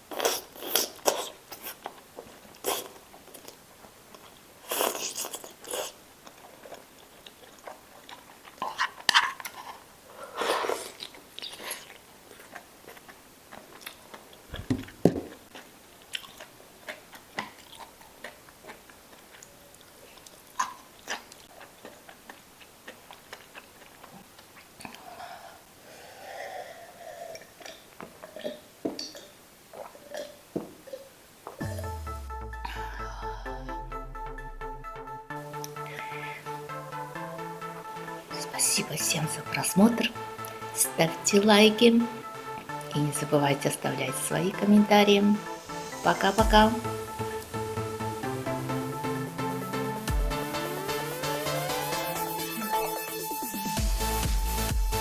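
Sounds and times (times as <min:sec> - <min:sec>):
person chewing and crunching food: 0:00.0 - 0:33.6
wet mouth sounds: 0:00.1 - 0:03.6, 0:04.2 - 0:09.6, 0:10.4 - 0:25.1, 0:27.2 - 0:31.1.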